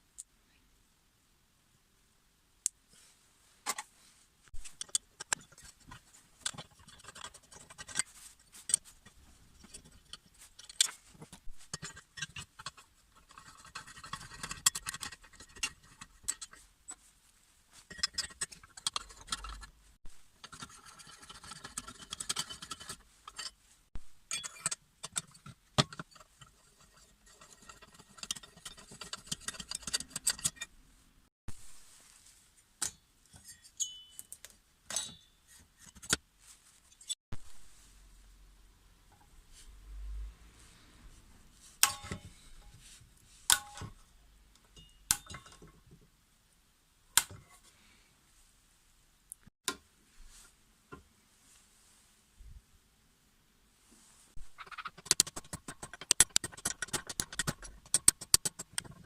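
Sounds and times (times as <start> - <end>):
metal tools clicking and knocking: 4.6 - 16.6, 17.8 - 19.8, 20.4 - 23.6, 24.3 - 30.7, 32.8 - 36.2, 41.8 - 42.3, 44.6 - 45.8, 54.6 - 59.0.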